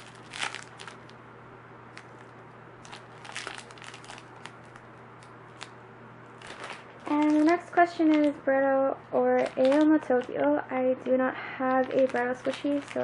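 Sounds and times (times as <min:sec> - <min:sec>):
plastic crinkling and rustling: 0:00.0 - 0:01.2, 0:01.9 - 0:05.7, 0:06.4 - 0:08.5, 0:09.3 - 0:10.6, 0:11.7 - 0:13.0.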